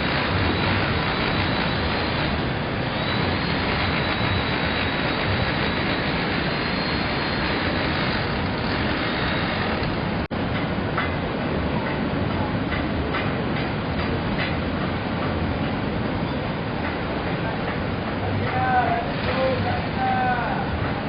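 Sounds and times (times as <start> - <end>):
heavy ocean surf breaking: 17.6 - 20.9.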